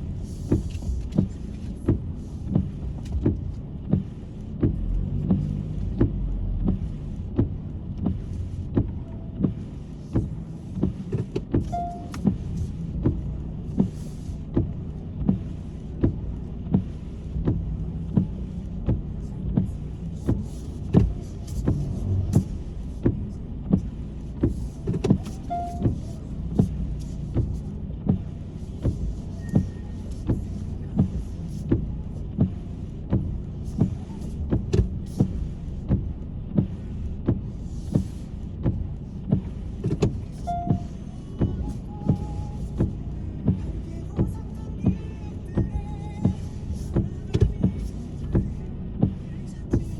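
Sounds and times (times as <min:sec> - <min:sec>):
car engine and road hum: 0:00.0 - 0:49.9
windshield wipers knocking: 0:00.0 - 0:49.9.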